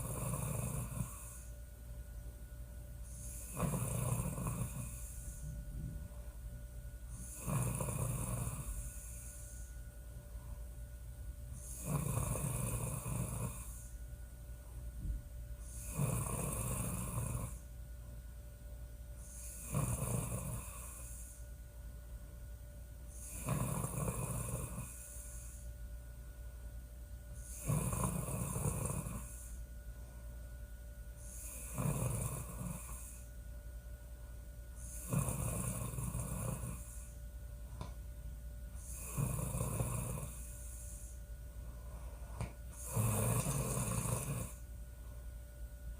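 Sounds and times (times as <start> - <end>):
woman snoring loudly: 0.0 - 1.5, 3.1 - 5.4, 7.1 - 9.7, 11.6 - 13.9, 15.6 - 17.7, 19.2 - 21.4, 23.1 - 25.6, 27.4 - 29.6, 31.2 - 33.3, 34.8 - 37.2, 38.8 - 41.2, 42.8 - 44.6.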